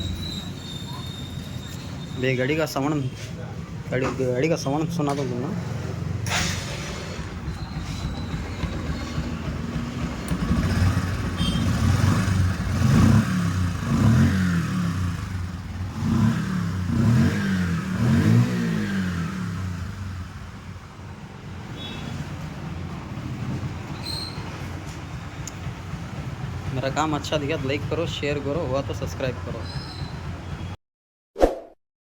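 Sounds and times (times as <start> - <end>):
motorcycle engine revving: 5.5 - 20.7.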